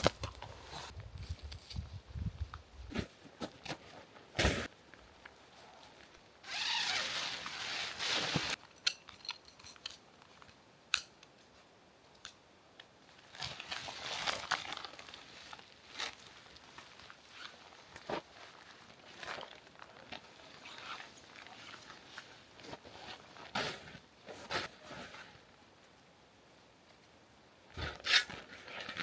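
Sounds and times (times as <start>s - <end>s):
crunching in snow: 6.5s - 8.6s.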